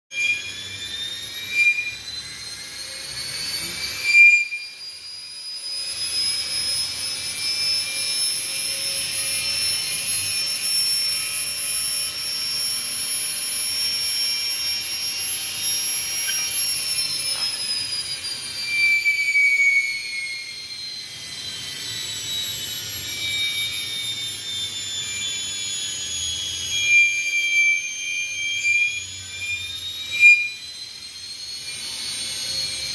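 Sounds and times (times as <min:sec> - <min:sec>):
washing machine motor whine: 0:00.1 - 0:32.9.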